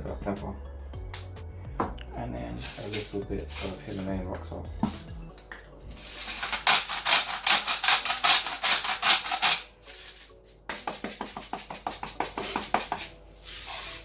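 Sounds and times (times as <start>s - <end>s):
salt grinder grinding: 6.0s - 14.0s.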